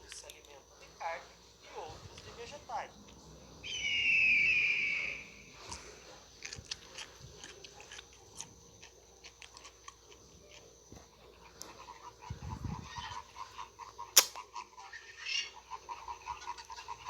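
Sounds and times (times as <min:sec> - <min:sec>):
animal's harsh cry: 0:12.7 - 0:17.0.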